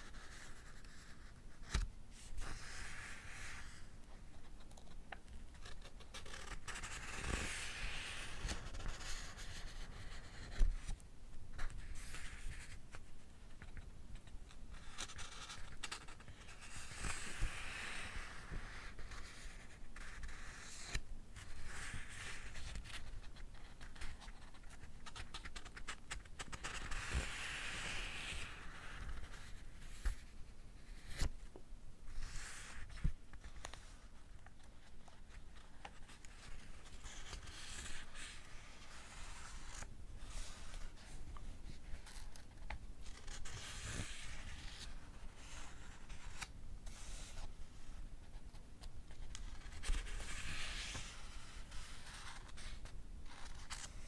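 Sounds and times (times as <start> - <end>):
book pages turning: 4.4 - 11.0, 31.0 - 31.3, 49.1 - 54.0.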